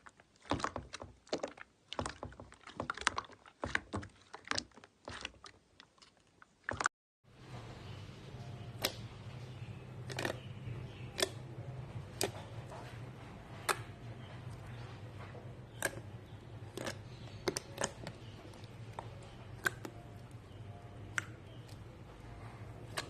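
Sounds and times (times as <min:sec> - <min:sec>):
low steady hum: 0:07.3 - 0:23.0
slime clicking and popping: 0:11.1 - 0:11.4, 0:15.7 - 0:21.8.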